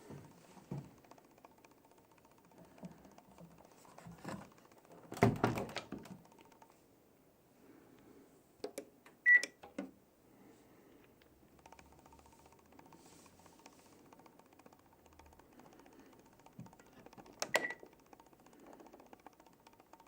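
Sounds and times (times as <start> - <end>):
sharp clicks: 11.0 - 20.0.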